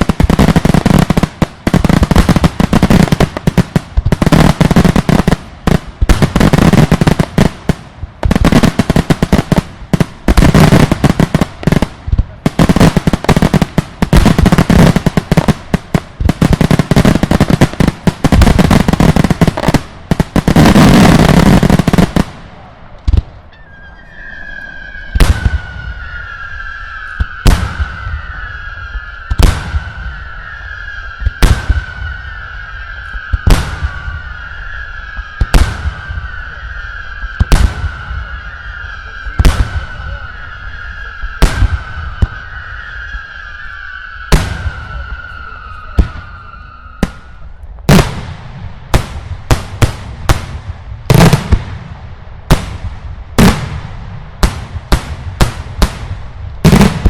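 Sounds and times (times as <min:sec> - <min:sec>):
fireworks barrage: 0:00.0 - 0:57.0
steady high whistle tone: 0:23.5 - 0:47.6
single heavy firework bangs: 0:25.1 - 0:43.6, 0:44.2 - 0:57.0.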